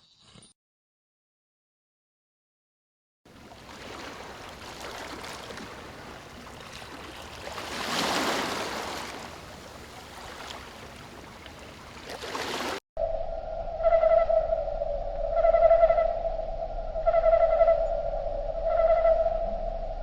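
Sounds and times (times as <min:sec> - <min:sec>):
water rushing: 0:03.3 - 0:12.8.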